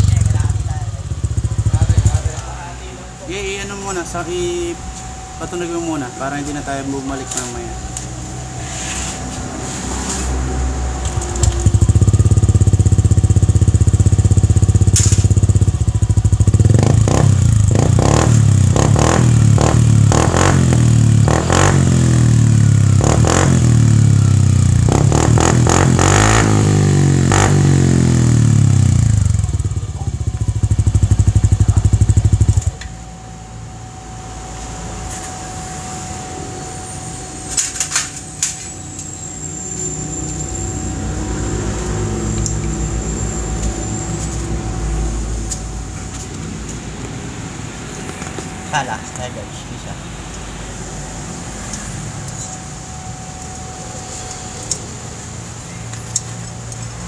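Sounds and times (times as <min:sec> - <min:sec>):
scooter engine revving: 0:00.0 - 0:32.9.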